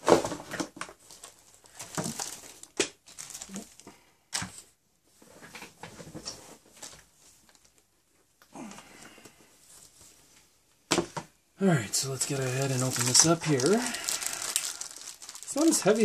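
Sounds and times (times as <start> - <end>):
crinkling plastic: 0.1 - 3.9, 6.8 - 7.9, 12.0 - 16.0
cardboard rustling: 12.1 - 16.0.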